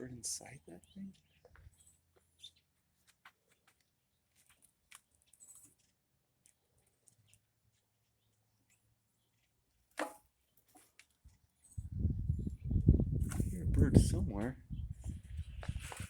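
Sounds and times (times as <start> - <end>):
faint clicks and scratches: 3.0 - 9.8.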